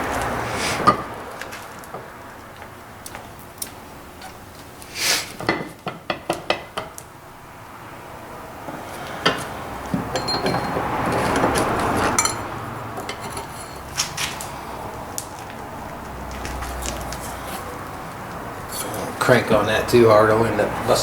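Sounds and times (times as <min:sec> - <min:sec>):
rough noise: 0:00.0 - 0:01.7, 0:04.8 - 0:05.5
faint metallic ringing: 0:10.1 - 0:10.8
steel tools clinking on metal: 0:10.1 - 0:10.8, 0:12.1 - 0:12.4.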